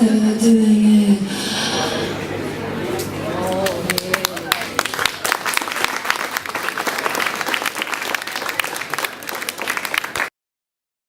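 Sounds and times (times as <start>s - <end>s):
audience applauding: 3.4s - 10.3s.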